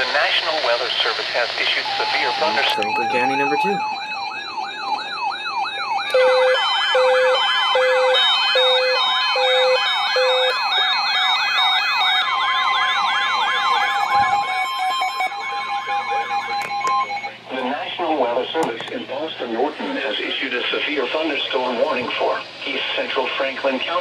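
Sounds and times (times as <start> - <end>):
electronic siren tones wailing: 1.8 - 17.4
steady high alarm tone: 1.8 - 17.6.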